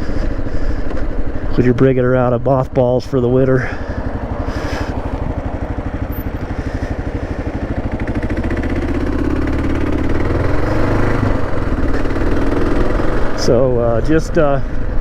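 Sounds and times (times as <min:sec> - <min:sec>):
motorcycle engine thumping: 0:00.0 - 0:10.4.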